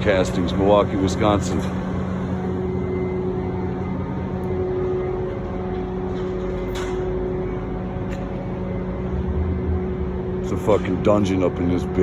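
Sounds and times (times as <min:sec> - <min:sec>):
machinery droning: 0:00.0 - 0:12.0.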